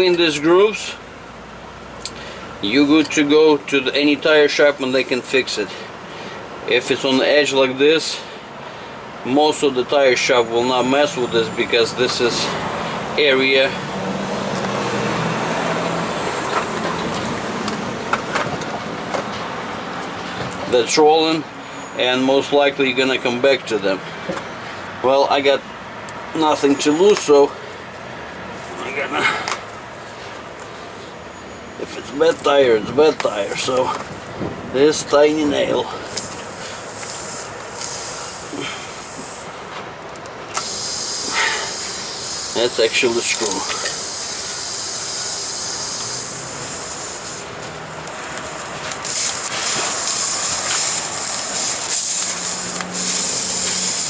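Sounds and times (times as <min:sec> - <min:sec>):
truck passing on road: 0:00.0 - 0:54.0
air hissing from tire: 0:12.3 - 0:18.2, 0:29.1 - 0:31.8, 0:32.5 - 0:54.0.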